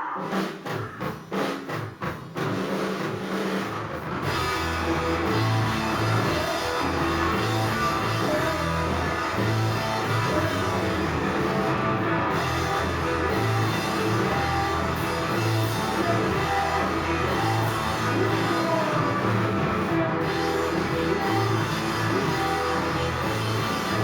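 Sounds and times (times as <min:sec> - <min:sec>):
drums: 0:00.0 - 0:24.0
electric guitar: 0:03.7 - 0:24.0
bass line: 0:04.2 - 0:24.0.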